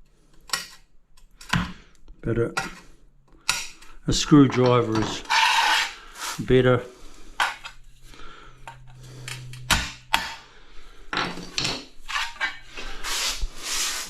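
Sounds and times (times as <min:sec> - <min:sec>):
screwdriver scraping ceramic tile: 0:04.5 - 0:06.4, 0:12.0 - 0:14.0.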